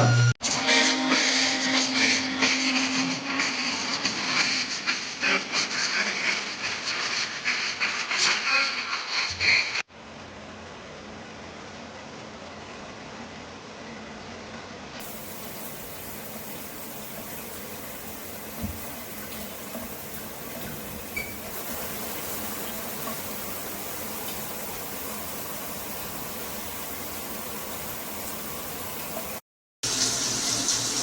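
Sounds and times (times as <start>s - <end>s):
water spraying from shower head: 15.0s - 31.0s.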